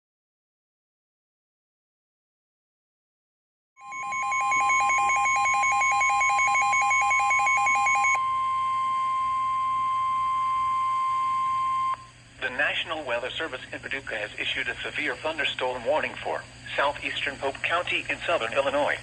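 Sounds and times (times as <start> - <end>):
pulsing two-pitch alert beep: 3.8 - 12.0
steady attention tone: 3.8 - 12.6.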